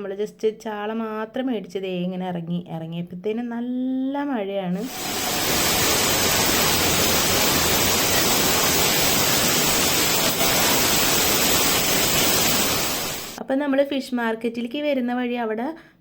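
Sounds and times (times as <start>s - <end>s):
heavy rain pouring: 4.8s - 13.4s.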